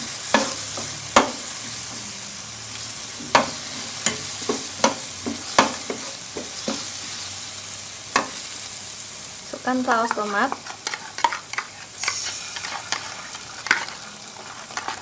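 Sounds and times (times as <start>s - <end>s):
food sizzling in hot oil: 0.0s - 15.0s
utensil scraping pan: 9.8s - 15.0s.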